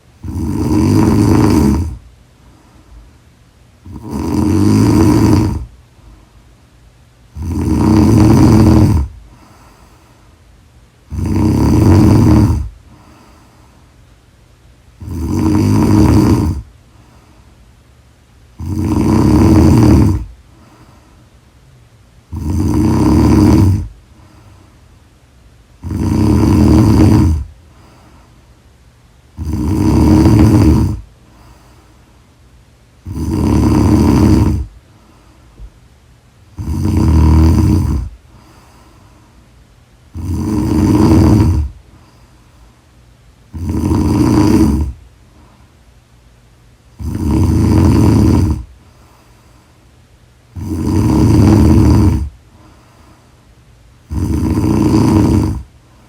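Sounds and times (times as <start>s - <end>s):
quiet breathing: 0.0s - 56.0s
person snoring loudly: 0.2s - 2.0s, 3.8s - 5.7s, 7.3s - 9.8s, 11.1s - 13.4s, 15.0s - 16.7s, 18.6s - 20.8s, 22.3s - 24.0s, 25.8s - 27.5s, 29.4s - 31.6s, 33.0s - 34.7s, 36.5s - 38.8s, 40.1s - 41.8s, 43.5s - 45.0s, 46.9s - 48.7s, 50.5s - 52.4s, 54.0s - 55.7s.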